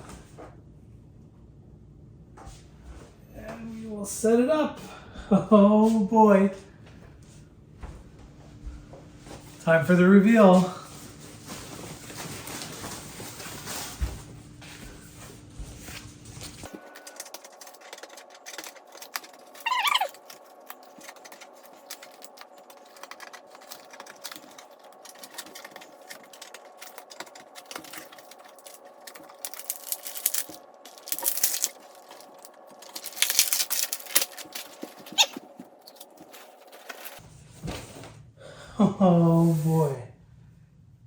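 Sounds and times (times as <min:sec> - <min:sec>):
packing material crinkling: 0:10.8 - 0:14.0, 0:16.6 - 0:37.2
falling squeak: 0:19.5 - 0:20.3, 0:35.1 - 0:35.4.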